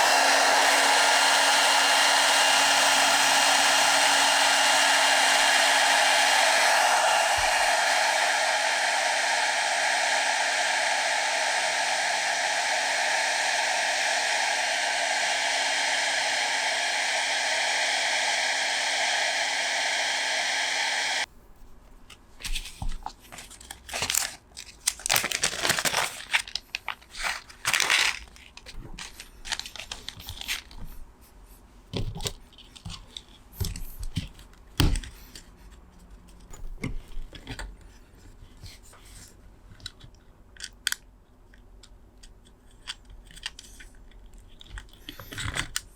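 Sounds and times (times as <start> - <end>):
electric blower running: 0.0 - 21.3
crinkling handling noises: 21.5 - 31.1.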